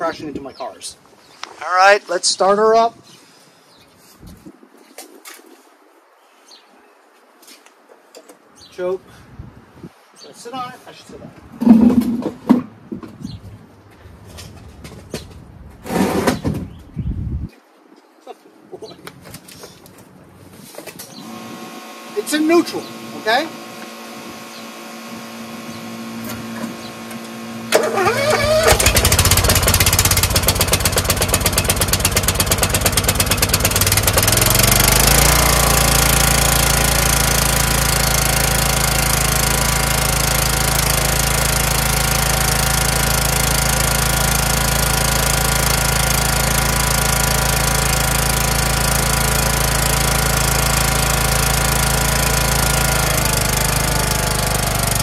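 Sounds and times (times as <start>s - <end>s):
lawn tractor engine running: 21.1s - 55.0s.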